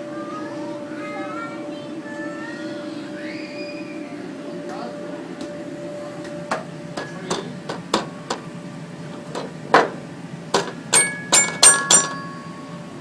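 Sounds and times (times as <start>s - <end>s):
loud ringing clinks: 10.7s - 12.8s.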